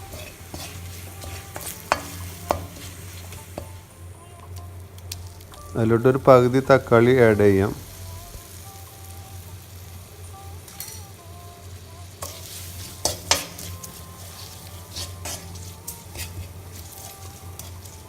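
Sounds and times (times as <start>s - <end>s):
spoon knocking and scraping pan: 0.0s - 3.8s, 12.2s - 18.0s
food sizzling in a pan: 0.0s - 18.0s.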